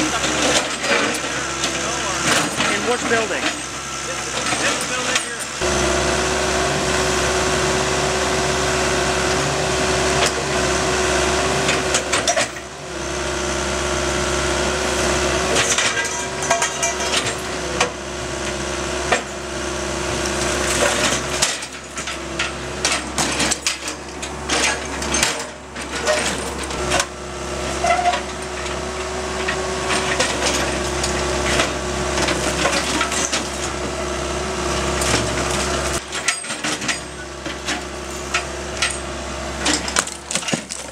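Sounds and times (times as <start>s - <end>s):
construction knocking and clattering: 0.0s - 5.7s, 34.7s - 40.9s.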